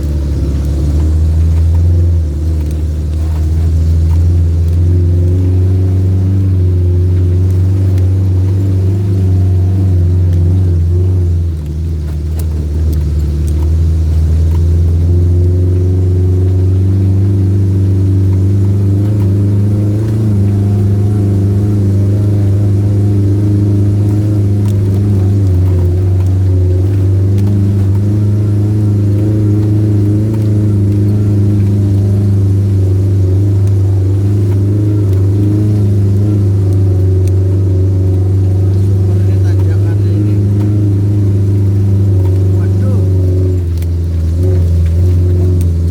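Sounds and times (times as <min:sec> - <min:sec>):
off-road vehicle engine running: 0:00.0 - 0:45.9.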